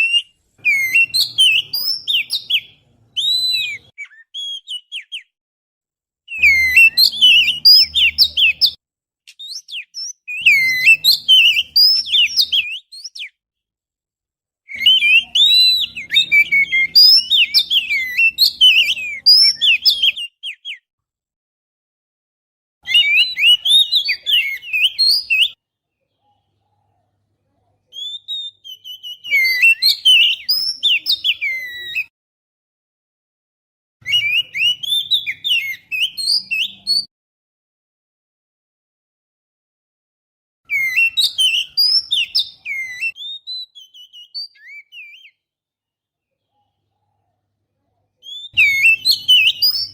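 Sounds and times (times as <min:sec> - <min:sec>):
bird whistled song phrases: 0:00.0 - 0:05.3, 0:06.3 - 0:13.4, 0:14.7 - 0:20.9, 0:22.8 - 0:25.6, 0:27.8 - 0:32.1, 0:34.0 - 0:37.1, 0:40.7 - 0:45.5, 0:48.2 - 0:49.9.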